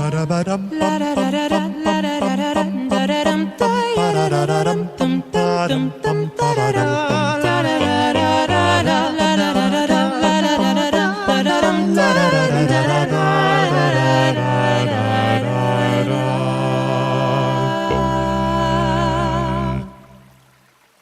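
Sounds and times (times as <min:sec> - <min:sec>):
voices singing in harmony: 0:00.0 - 0:20.3
deep low note: 0:17.9 - 0:20.0.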